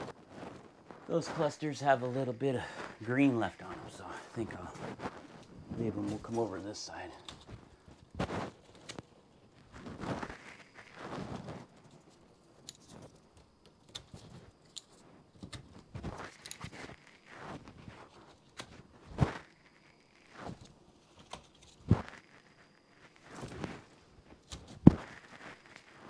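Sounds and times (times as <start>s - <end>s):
footsteps: 0.0s - 9.0s.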